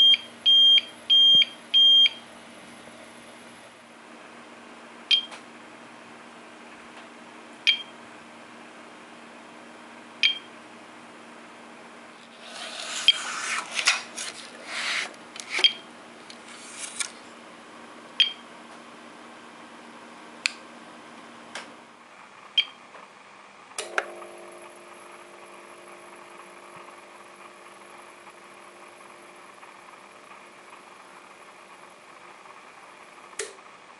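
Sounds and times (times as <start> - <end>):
parts rubbing and scraping: 12.2 - 17.3.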